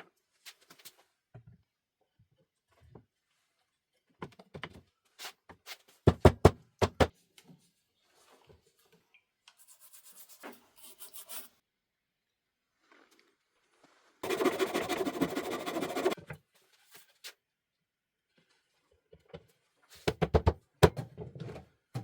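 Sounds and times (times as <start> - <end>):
quick scraping and rubbing: 14.2 - 16.2.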